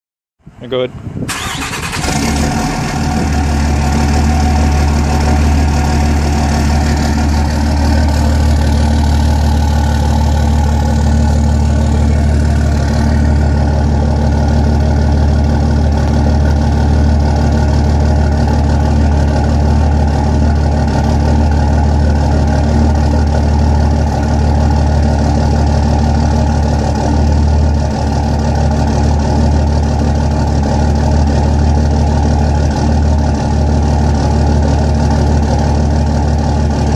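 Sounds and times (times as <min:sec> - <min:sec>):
engine idling: 0:01.3 - 0:36.9.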